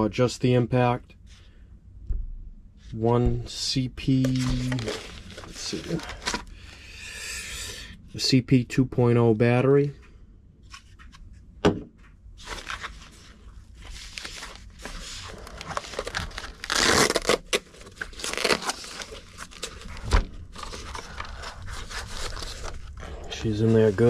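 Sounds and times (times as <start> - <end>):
packaging crinkling and tearing: 4.2 - 6.5, 12.4 - 24.0.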